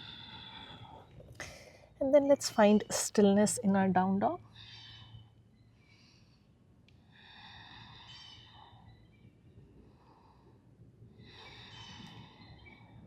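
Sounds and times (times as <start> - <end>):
low steady hum: 0.0 - 13.0
faint drawn-out bird calls: 7.8 - 9.3, 11.4 - 13.0.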